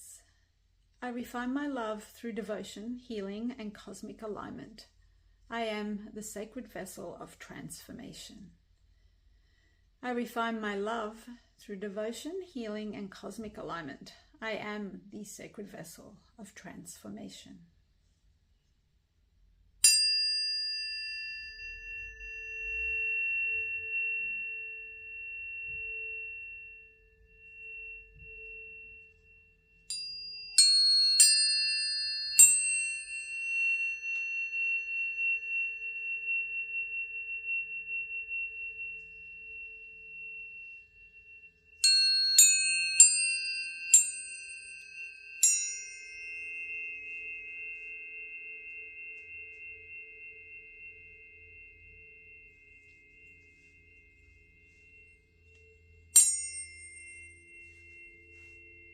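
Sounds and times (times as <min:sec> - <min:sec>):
tuning fork ringing: 0:19.8 - 0:58.9.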